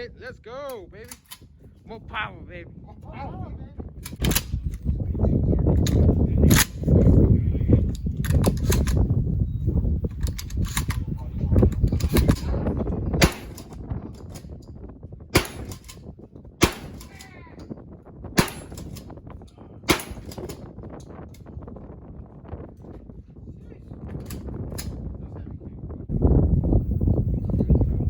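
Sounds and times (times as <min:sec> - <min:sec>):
wind rumble on microphone: 0:00.0 - 0:28.0
gunshots: 0:13.2 - 0:13.8, 0:15.4 - 0:16.0, 0:16.6 - 0:17.3, 0:18.4 - 0:19.0, 0:19.9 - 0:20.6.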